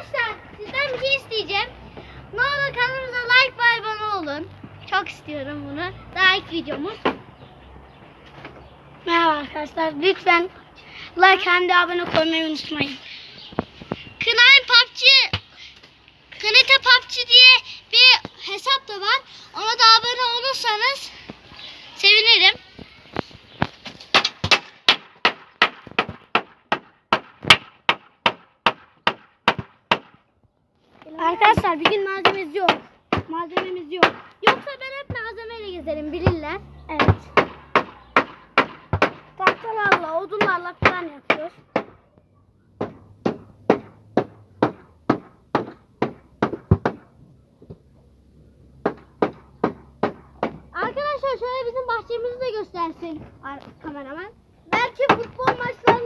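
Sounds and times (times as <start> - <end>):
hammer striking wooden boards: 24.1 - 30.2, 37.0 - 42.0, 42.8 - 47.1, 48.8 - 50.7
hammer blows on wood: 31.5 - 35.3, 36.2 - 42.0, 42.8 - 47.9, 48.8 - 50.7.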